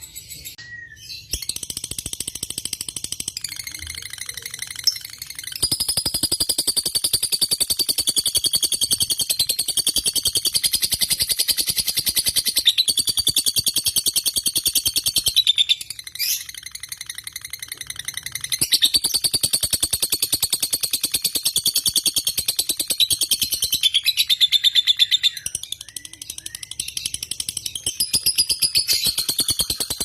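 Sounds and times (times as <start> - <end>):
lovebird chattering trill: 1.2 - 30.0.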